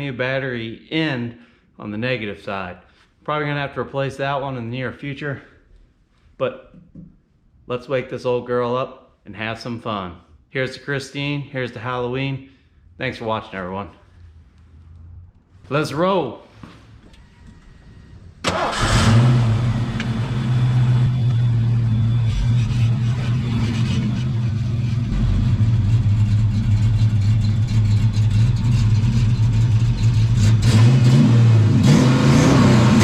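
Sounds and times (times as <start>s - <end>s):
car engine starting and idling: 17.0s - 33.0s
engine revving: 18.5s - 33.0s.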